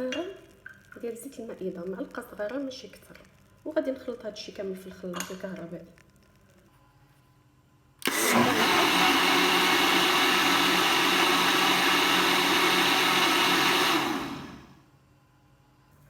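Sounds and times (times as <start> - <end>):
electric blender running: 8.0 - 14.8.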